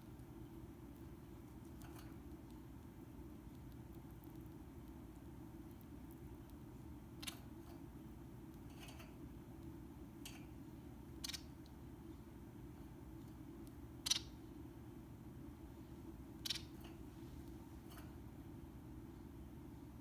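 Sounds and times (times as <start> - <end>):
steady low hum: 0.0 - 20.0
finch calls: 11.2 - 11.6, 14.0 - 14.4, 16.4 - 16.8.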